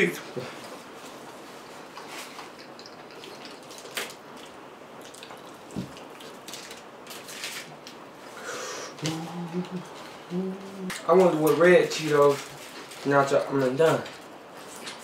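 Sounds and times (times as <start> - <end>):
steady hiss: 0.0 - 15.0
close chewing and mouth sounds: 0.6 - 8.0.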